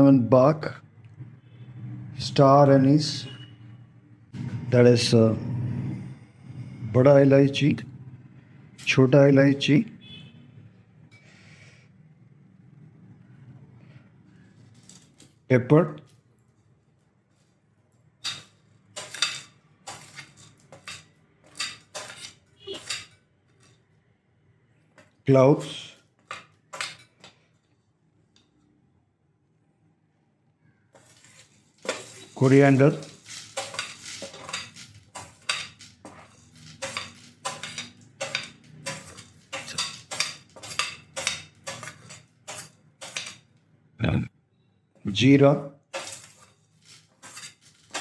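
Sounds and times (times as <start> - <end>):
spoon and dishes clinking: 18.2 - 23.8, 25.6 - 27.4, 31.0 - 43.5, 46.0 - 48.0.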